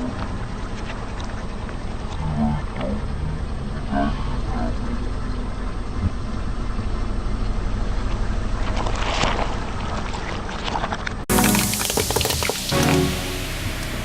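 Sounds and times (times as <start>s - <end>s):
crackling under tyres: 5.9s - 11.2s.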